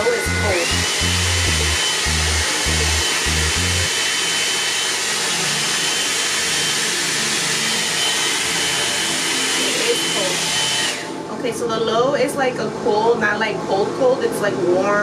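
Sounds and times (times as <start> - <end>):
hair dryer brush air rush: 0.0 - 11.2
fan motor whine: 0.0 - 15.0.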